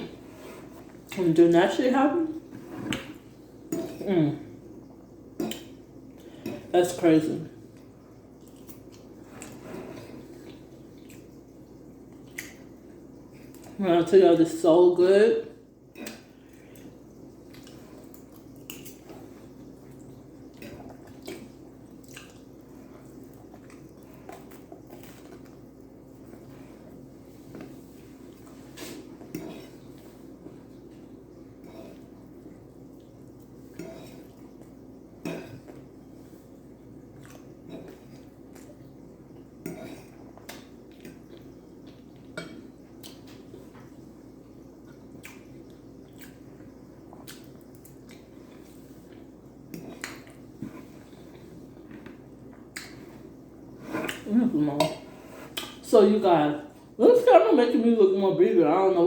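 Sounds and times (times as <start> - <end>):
faint low hum: 0.0 - 59.0
wet chewing mouth sounds: 19.9 - 25.6.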